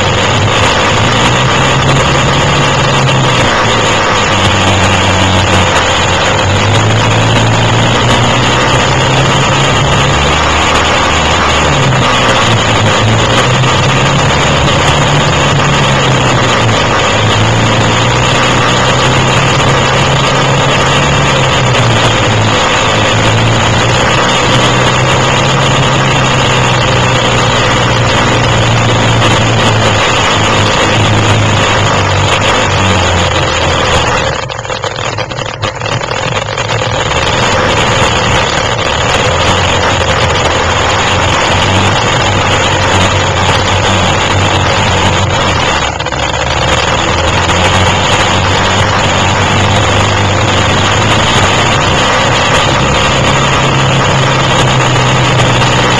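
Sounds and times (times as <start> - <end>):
quad bike engines revving: 0.0 - 55.9
rough noise: 0.0 - 55.9.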